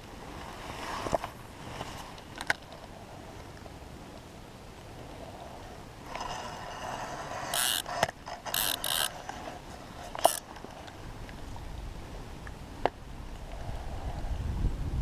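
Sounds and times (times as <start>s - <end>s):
fishing reel gears whirring: 6.1s - 9.5s, 10.1s - 10.5s.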